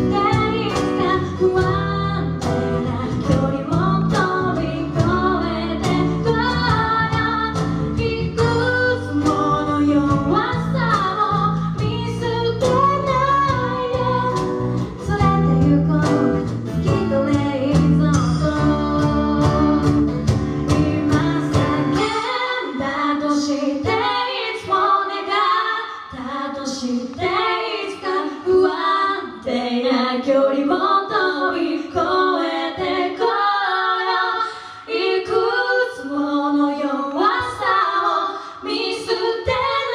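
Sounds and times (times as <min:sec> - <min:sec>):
instrumental backing: 0:00.0 - 0:25.7
women singing in harmony: 0:00.0 - 0:39.9.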